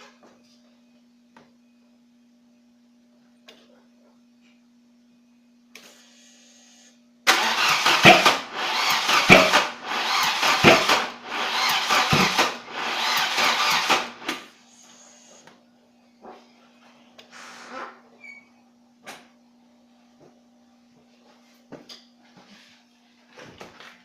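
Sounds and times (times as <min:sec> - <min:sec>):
car engine cranking: 0:07.3 - 0:14.2.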